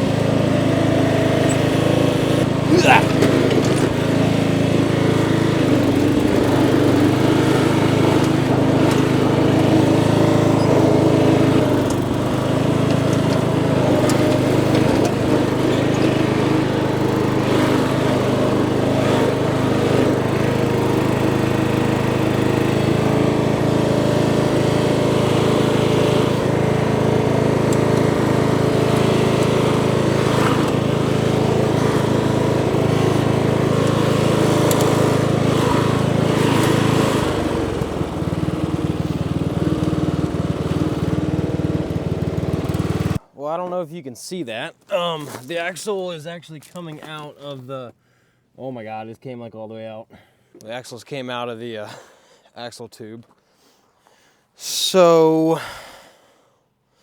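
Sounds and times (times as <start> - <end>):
small engine running steadily: 0.0 - 43.3.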